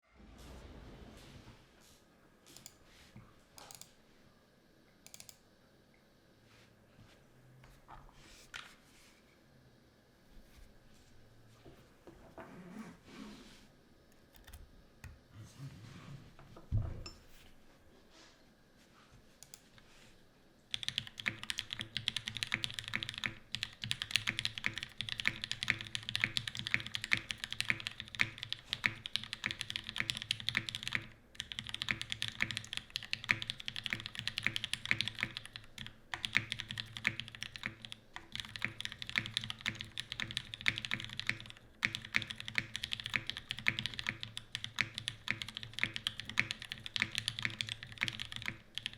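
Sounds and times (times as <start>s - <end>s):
typing on mechanical keyboard: 20.7s - 48.9s.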